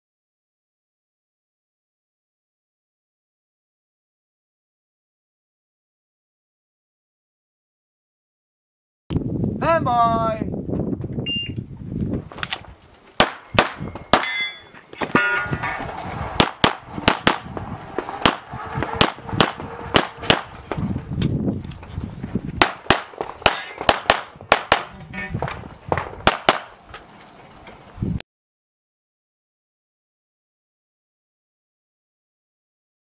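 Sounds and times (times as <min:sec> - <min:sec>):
shot timer beep: 0:11.2 - 0:11.6
rapid pistol fire: 0:13.2 - 0:13.8, 0:16.4 - 0:17.5, 0:22.6 - 0:25.0, 0:26.2 - 0:26.8
steel targets ringing: 0:13.4 - 0:15.8, 0:23.5 - 0:23.9.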